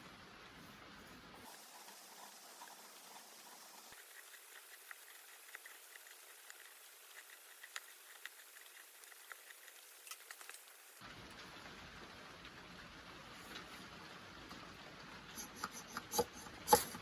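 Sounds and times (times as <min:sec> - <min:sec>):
thin hiss: 0:00.0 - 0:11.0
small wood fire crackling: 0:00.0 - 0:17.0.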